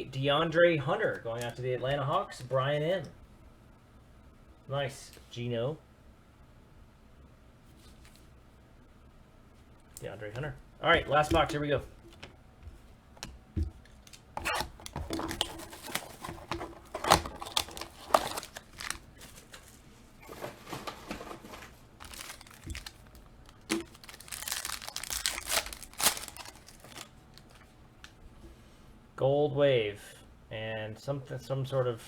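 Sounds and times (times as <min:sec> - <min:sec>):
cards rustling: 0:10.0 - 0:27.7
plastic wrapping tearing and crinkling: 0:14.0 - 0:19.8, 0:20.8 - 0:27.6.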